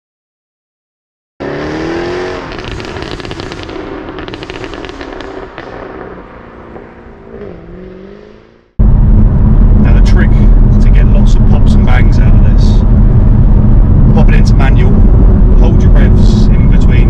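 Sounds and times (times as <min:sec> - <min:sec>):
car engine revs dropping: 0:01.4 - 0:12.3
exhaust pops and crackles: 0:02.4 - 0:06.9, 0:08.8 - 0:17.0.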